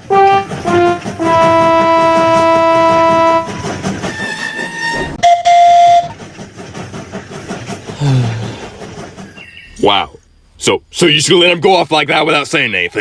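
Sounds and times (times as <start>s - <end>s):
locomotive horn blasts: 0.0s - 6.1s
train rumbling on rails: 0.0s - 13.0s.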